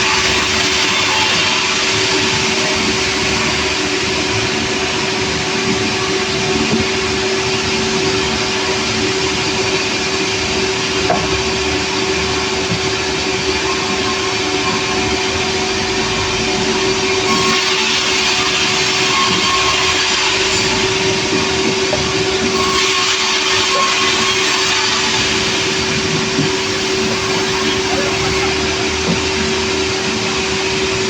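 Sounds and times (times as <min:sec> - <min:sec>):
sawmill machinery drone: 0:00.0 - 0:31.0.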